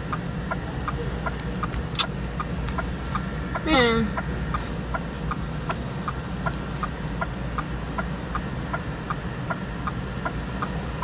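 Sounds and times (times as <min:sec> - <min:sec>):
car engine and cabin hum: 0:00.0 - 0:07.3
turn signal ticking: 0:00.0 - 0:10.8.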